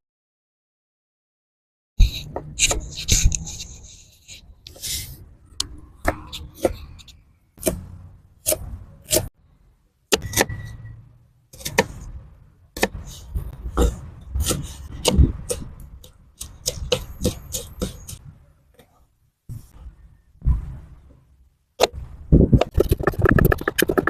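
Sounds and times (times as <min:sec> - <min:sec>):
knife scraping on board: 0:02.0 - 0:05.2, 0:12.8 - 0:18.2
utensils knocking and tapping: 0:13.8 - 0:18.2.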